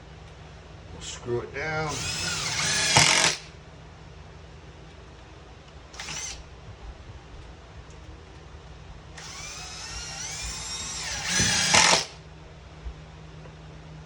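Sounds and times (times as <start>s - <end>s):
power drill driving a screw: 1.9s - 3.5s, 6.0s - 6.4s, 9.2s - 12.2s.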